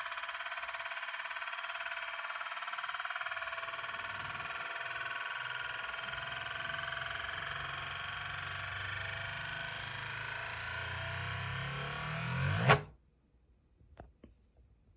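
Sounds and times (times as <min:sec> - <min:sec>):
spinning disk metallic whirring rattle: 0:00.0 - 0:12.8.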